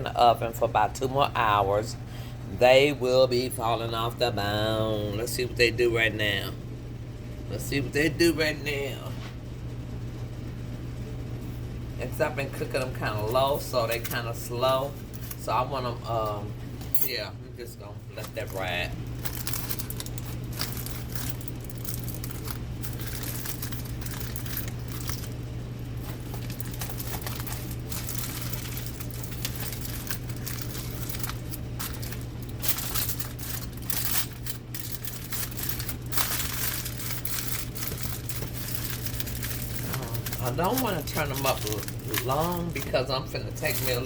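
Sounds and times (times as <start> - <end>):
steady low hum: 0.0 - 44.0
aluminium foil crinkling: 18.1 - 44.0.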